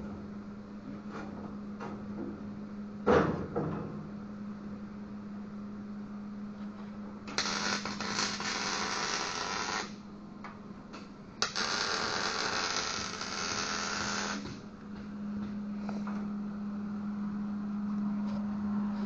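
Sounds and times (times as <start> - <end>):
steady low hum: 0.0 - 19.0
welding arc crackling: 7.3 - 10.0, 11.4 - 14.7.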